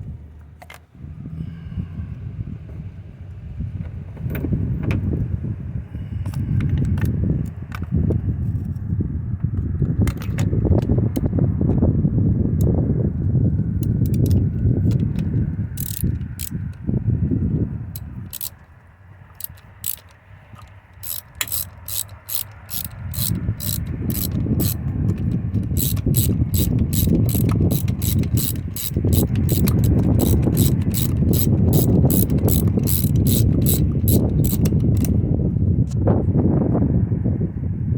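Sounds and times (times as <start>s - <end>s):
low rumbling: 0.0s - 18.4s, 21.2s - 37.9s
ratchet wrench clicking: 13.8s - 16.8s, 18.0s - 18.6s, 19.3s - 35.2s.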